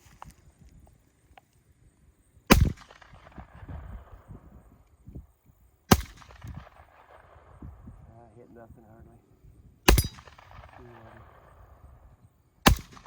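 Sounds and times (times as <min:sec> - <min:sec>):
handgun shots with echo: 0:05.9 - 0:07.2, 0:09.9 - 0:11.2, 0:12.7 - 0:13.0.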